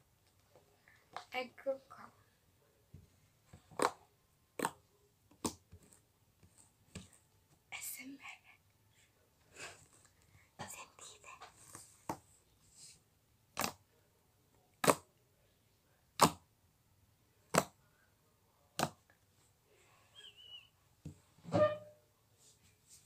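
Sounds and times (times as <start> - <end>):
slime squishing: 13.5 - 13.8.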